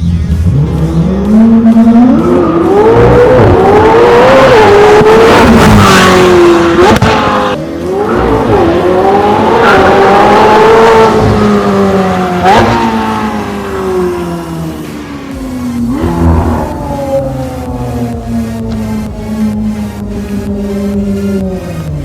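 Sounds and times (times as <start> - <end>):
sports car engine revving: 0.0 - 22.0
exhaust crack at gear change: 15.4 - 22.0.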